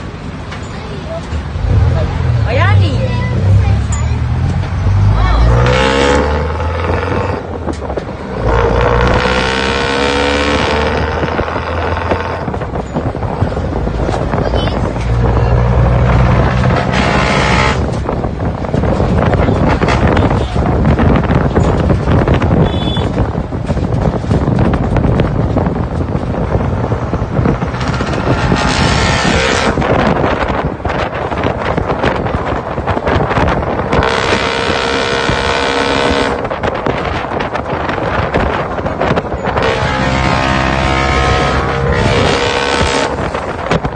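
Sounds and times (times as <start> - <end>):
diesel engine revving: 1.4 - 43.9.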